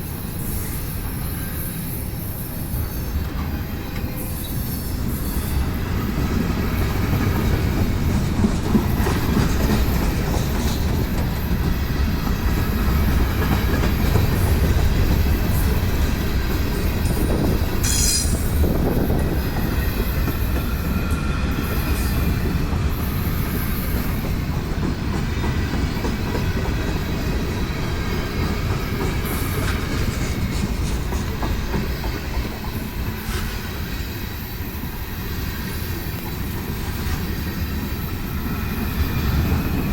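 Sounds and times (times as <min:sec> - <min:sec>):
train rumbling past: 0:00.0 - 0:39.9
high wheel squeal: 0:00.1 - 0:06.1.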